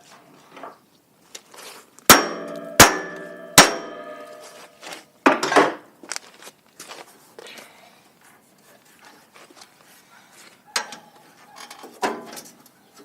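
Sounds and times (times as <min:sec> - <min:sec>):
hammer ringing on metal frame: 0:02.1 - 0:04.8.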